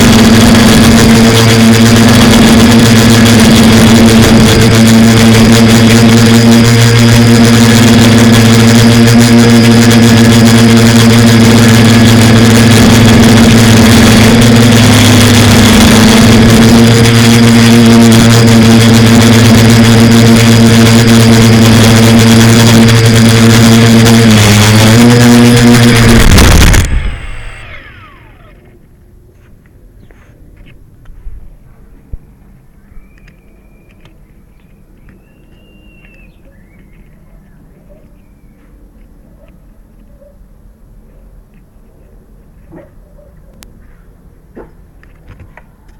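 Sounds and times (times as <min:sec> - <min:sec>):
drone motors humming: 0:00.0 - 0:29.0.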